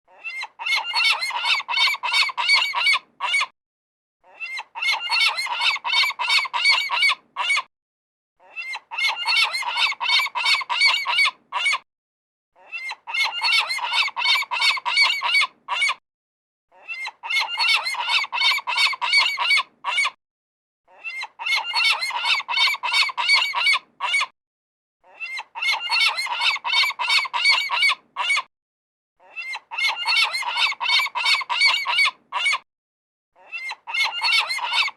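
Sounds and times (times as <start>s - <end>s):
seagulls calling: 0.2s - 3.5s, 4.4s - 7.6s, 8.6s - 11.8s, 12.8s - 15.9s, 16.9s - 20.1s, 21.1s - 24.2s, 25.2s - 28.4s, 29.4s - 32.6s, 33.5s - 34.9s.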